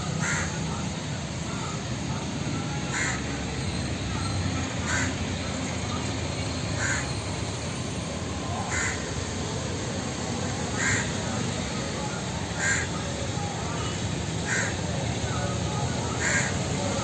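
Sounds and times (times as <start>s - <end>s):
crow cawing: 0.2s - 0.6s, 2.9s - 3.2s, 4.8s - 5.2s, 6.8s - 7.1s, 8.6s - 9.1s, 10.7s - 11.2s, 12.6s - 13.0s, 14.4s - 14.9s, 16.2s - 16.6s.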